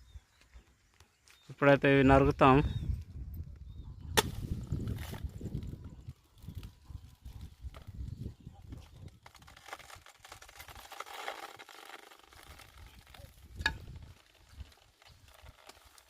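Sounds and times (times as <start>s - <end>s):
wind buffeting microphone: 2.1s - 9.2s, 12.8s - 15.3s
sharp chop: 4.2s - 4.6s
rustling of banana leaves: 4.2s - 16.0s.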